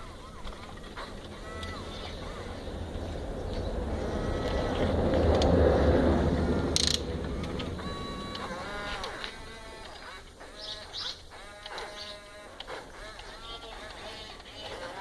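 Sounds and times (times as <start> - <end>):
toy excavator motors and gears: 0.0 - 15.0.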